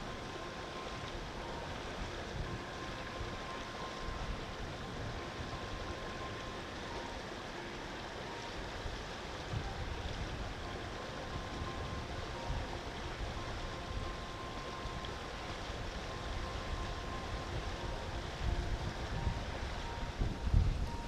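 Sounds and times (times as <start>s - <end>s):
rushing wind: 0.0s - 21.0s
wind buffeting microphone: 8.6s - 21.0s.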